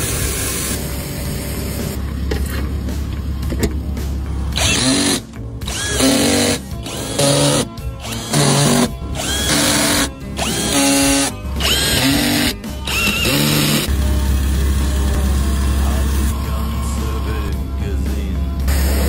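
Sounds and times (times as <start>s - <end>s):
power drill whining bursts: 4.6s - 17.3s.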